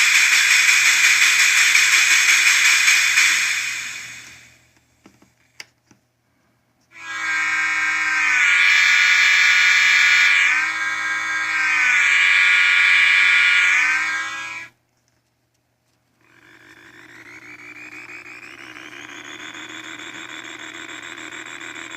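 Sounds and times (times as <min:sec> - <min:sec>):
whirring drone: 0:00.0 - 0:04.6, 0:07.0 - 0:14.8, 0:16.2 - 0:21.9
loud horn-like tone: 0:06.9 - 0:14.7.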